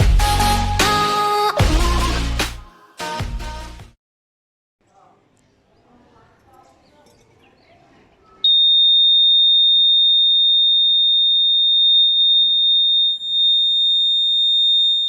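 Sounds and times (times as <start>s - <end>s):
high-pitched alarm buzzer: 8.5s - 15.0s.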